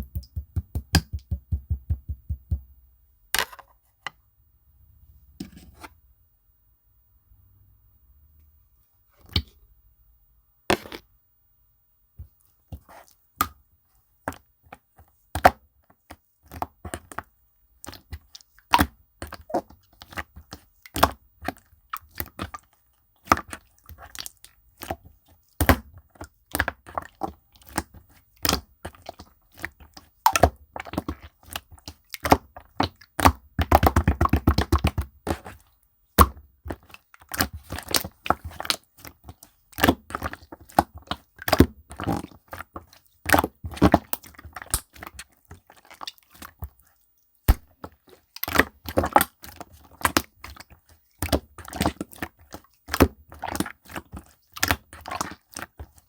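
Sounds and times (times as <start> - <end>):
slime squished by hand: 47.5 - 56.0.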